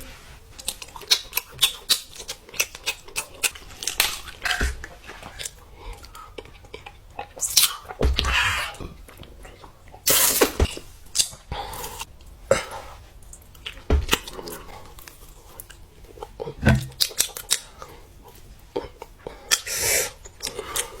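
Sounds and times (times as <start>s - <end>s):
food crunching when chewed: 0.6s - 8.0s, 13.3s - 21.0s.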